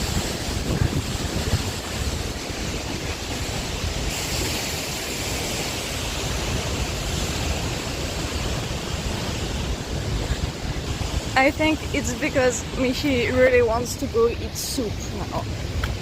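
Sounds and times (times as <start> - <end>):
waterfall rushing: 0.0 - 16.0
wind buffeting microphone: 0.0 - 16.0.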